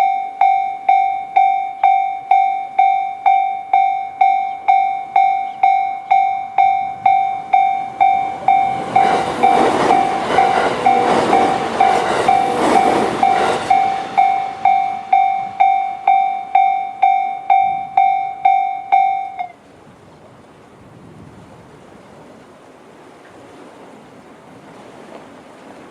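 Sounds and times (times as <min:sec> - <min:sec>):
level crossing warning bell: 0:00.0 - 0:19.6
train wheels clicking over rails: 0:07.8 - 0:16.8.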